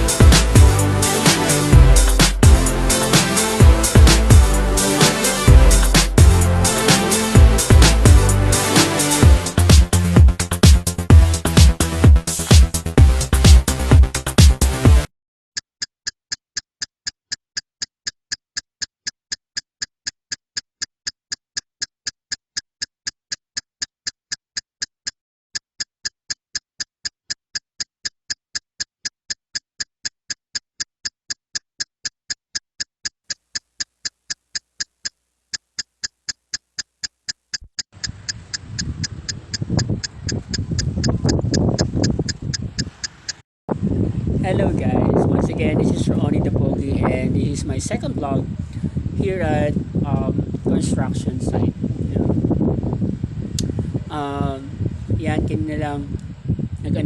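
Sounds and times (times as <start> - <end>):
clock ticking: 0.0 - 14.8, 15.6 - 43.4.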